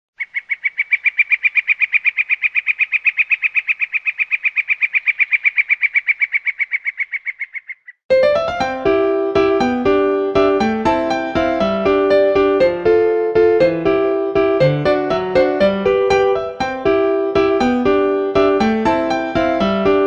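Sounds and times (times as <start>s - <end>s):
piano ringtone melody: 8.1s - 20.0s.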